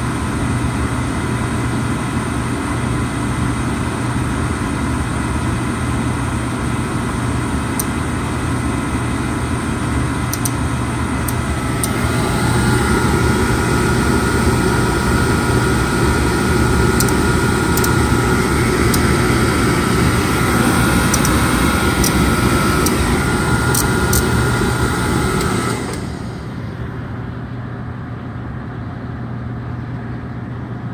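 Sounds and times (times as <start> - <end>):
oil furnace burner humming: 0.0 - 30.9
steady whine: 5.1 - 28.8
electrical box clicks: 16.9 - 19.3, 20.0 - 24.4.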